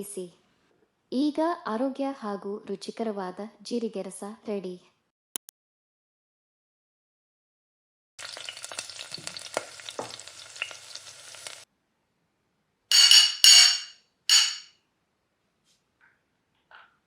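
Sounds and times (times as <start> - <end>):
pot bubbling and crackling: 8.2 - 11.6
hissing sizzle: 8.2 - 11.7
short ringing metal clanks: 12.9 - 14.7.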